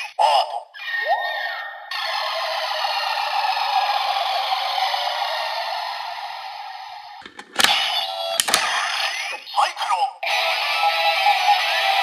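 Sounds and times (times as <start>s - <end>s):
sharp clicks: 7.2s - 7.8s, 8.4s - 8.8s.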